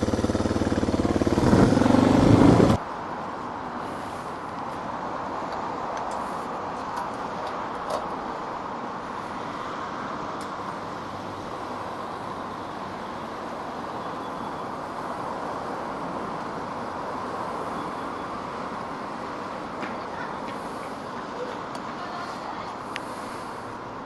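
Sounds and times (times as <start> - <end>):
motorcycle riding noise: 0.0 - 2.8
rushing wind: 0.0 - 24.0.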